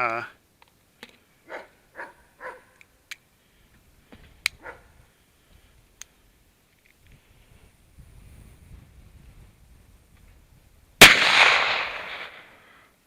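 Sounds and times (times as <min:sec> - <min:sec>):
dog barking: 0:01.5 - 0:02.8, 0:04.6 - 0:05.0.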